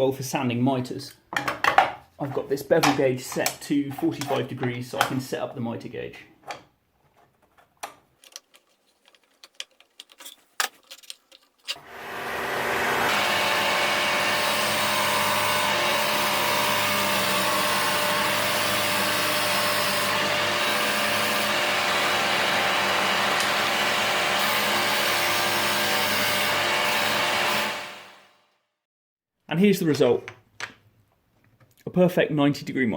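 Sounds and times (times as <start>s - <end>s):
disc sander running: 11.6s - 28.1s
dust extraction vacuum: 11.7s - 28.2s.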